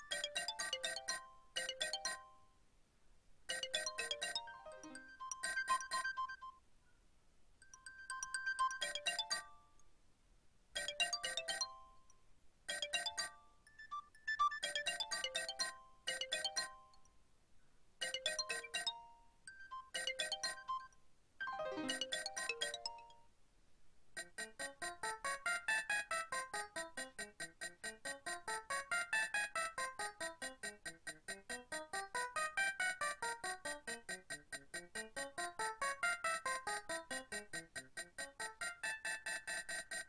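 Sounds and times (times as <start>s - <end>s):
synthesized phone ringtone: 0.0s - 2.3s, 3.5s - 6.5s, 7.8s - 9.6s, 12.7s - 16.8s, 18.0s - 23.2s, 25.0s - 40.0s.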